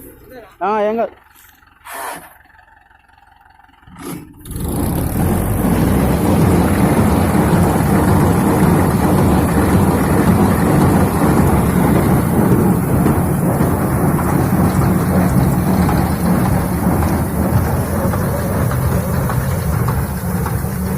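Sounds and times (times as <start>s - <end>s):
baler machine running: 4.4s - 20.9s.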